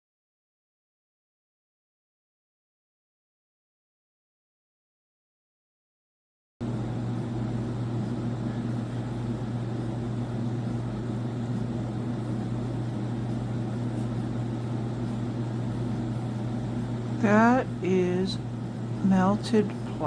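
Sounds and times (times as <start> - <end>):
upright vacuum humming: 6.6 - 20.0.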